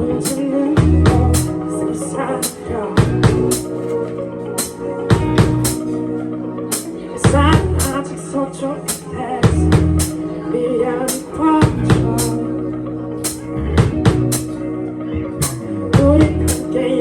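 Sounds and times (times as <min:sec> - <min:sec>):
live rock band playing: 0:00.0 - 0:17.0
drum kit beat: 0:00.2 - 0:01.6, 0:02.4 - 0:03.7, 0:04.6 - 0:05.9, 0:06.7 - 0:08.0, 0:08.9 - 0:10.2, 0:11.1 - 0:12.4, 0:13.2 - 0:14.6, 0:15.4 - 0:16.6.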